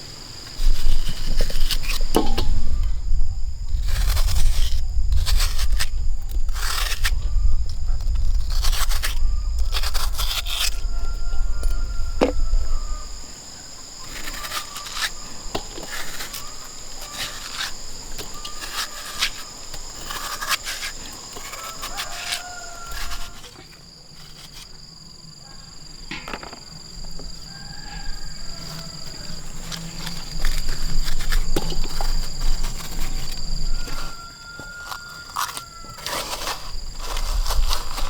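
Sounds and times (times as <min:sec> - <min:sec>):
high-pitched insect drone: 0:00.0 - 0:23.6.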